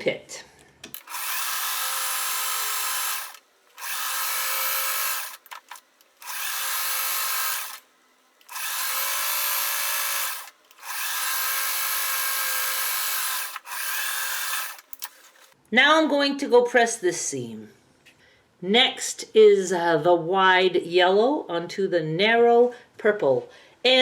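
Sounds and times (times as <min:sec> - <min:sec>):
sewing machine motor running: 0:01.0 - 0:15.6.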